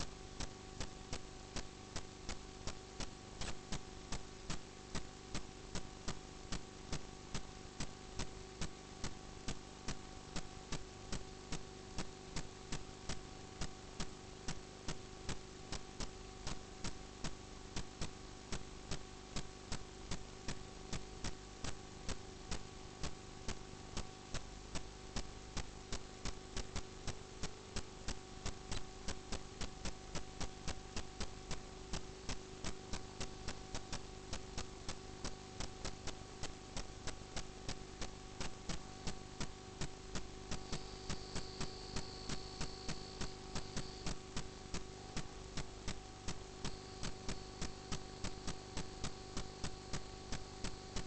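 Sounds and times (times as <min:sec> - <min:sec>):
steady electrical hum: 0:00.0 - 0:51.0.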